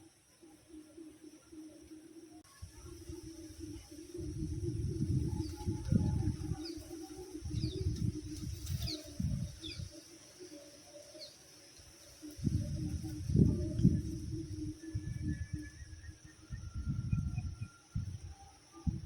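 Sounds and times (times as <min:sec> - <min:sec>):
small birds chirping: 0:02.8 - 0:18.0.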